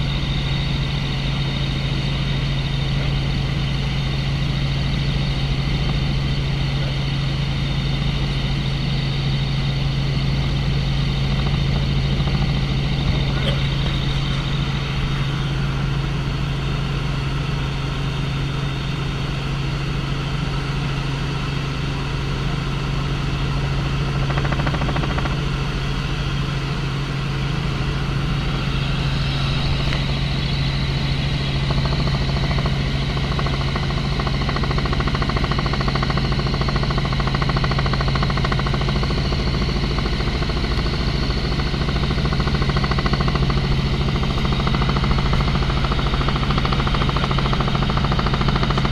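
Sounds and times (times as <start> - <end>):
helicopter engine and rotors: 0.0 - 48.9.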